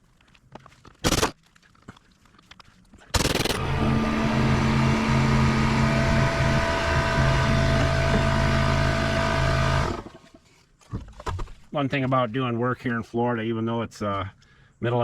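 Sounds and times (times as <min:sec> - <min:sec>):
steady mechanical hum: 0:03.2 - 0:10.3.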